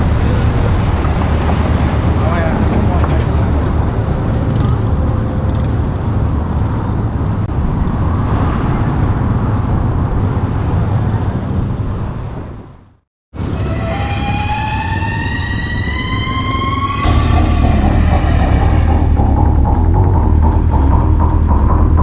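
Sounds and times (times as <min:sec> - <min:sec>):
highway traffic roar: 0:00.0 - 0:13.8.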